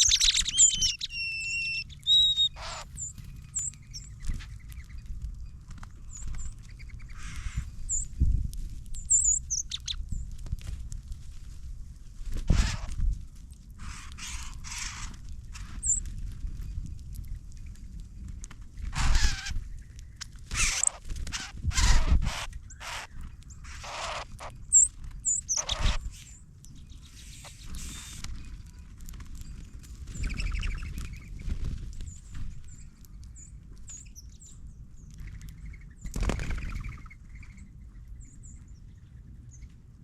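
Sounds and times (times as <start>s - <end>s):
harsh bird calls: 0.0s - 5.0s, 6.1s - 8.1s, 18.8s - 26.4s
bird chirps: 0.0s - 8.1s, 9.0s - 10.0s, 15.8s - 16.0s, 22.7s - 28.8s, 29.4s - 31.4s.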